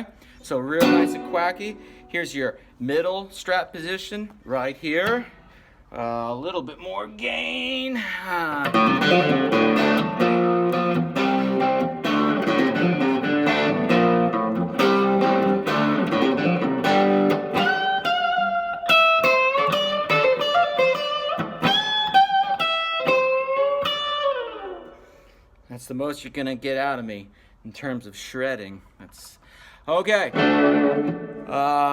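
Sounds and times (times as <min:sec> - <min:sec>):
electric guitar lead notes: 0:00.8 - 0:02.1, 0:08.6 - 0:25.2, 0:30.3 - 0:31.9.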